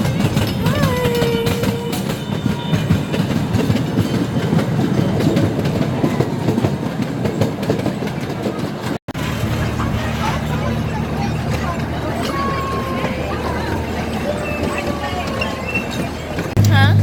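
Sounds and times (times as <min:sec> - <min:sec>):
clacking over rail joints: 0:00.0 - 0:16.7
ride train wheels rumbling: 0:00.0 - 0:17.0.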